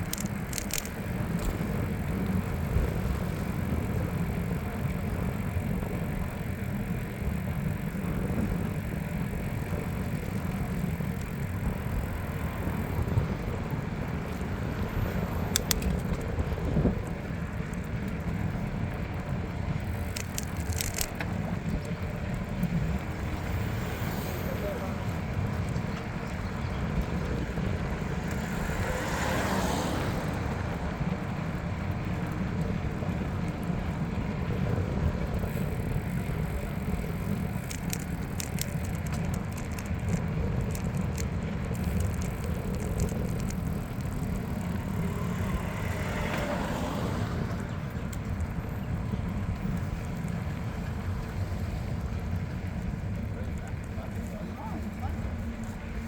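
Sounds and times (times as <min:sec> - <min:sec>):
bicycle clicks and rattles: 0:00.0 - 0:56.0
wind and tyres rumbling: 0:00.0 - 0:56.0.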